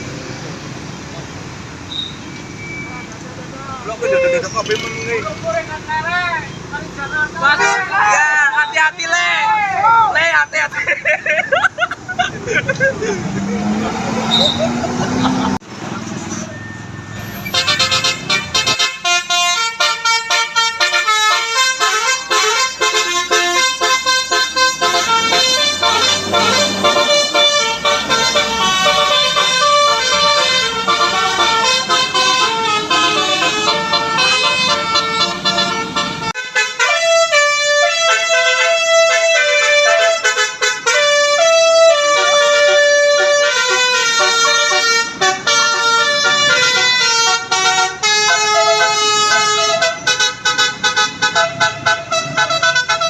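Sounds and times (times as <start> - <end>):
musical air horn tune: 17.3 - 53.0.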